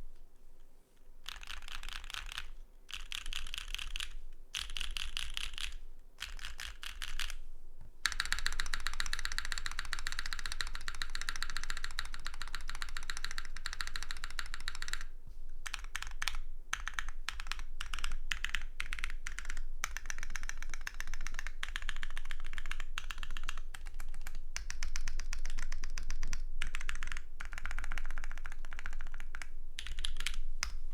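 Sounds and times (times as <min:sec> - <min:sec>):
typing on mechanical keyboard: 0:01.2 - 0:07.4, 0:08.0 - 0:30.8.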